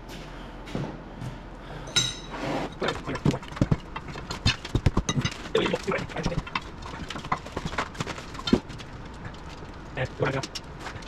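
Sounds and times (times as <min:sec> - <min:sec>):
knocks and clanks on rubber track: 0:02.9 - 0:09.6.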